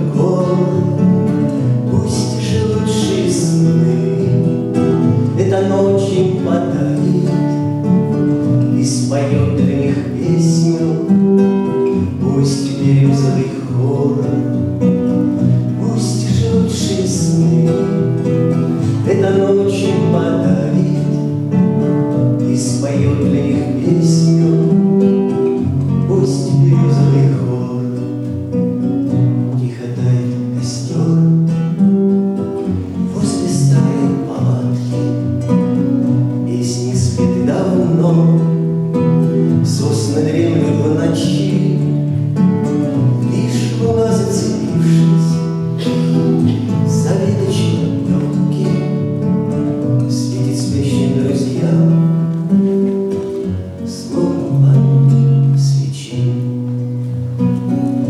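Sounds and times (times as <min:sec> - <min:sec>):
acoustic guitar strumming: 0:00.0 - 0:58.0.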